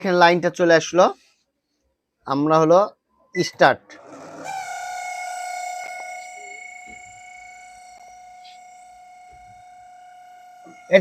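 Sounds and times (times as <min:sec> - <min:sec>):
microwave oven high-pitched whine: 0:04.0 - 0:11.0.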